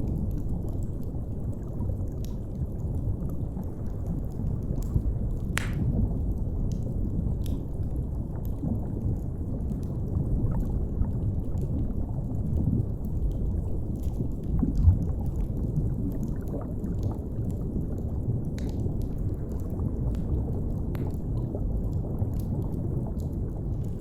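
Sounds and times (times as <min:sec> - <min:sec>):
muffled underwater rumble: 0:00.0 - 0:24.0
fire crackling: 0:01.6 - 0:08.5, 0:16.6 - 0:24.0.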